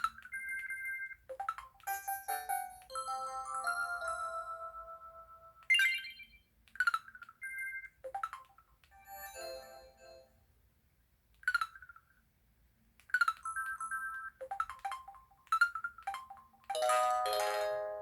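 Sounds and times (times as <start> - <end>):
phone alert melody: 0.8 - 6.4.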